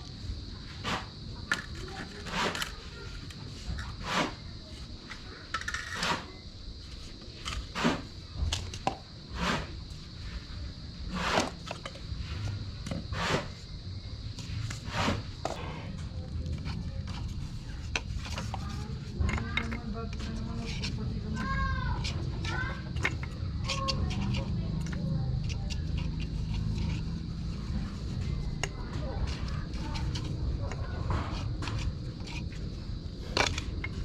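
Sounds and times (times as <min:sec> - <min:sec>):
short scrapes or knocks: 0:04.0 - 0:04.4, 0:05.8 - 0:06.3, 0:13.1 - 0:13.6, 0:14.8 - 0:15.8.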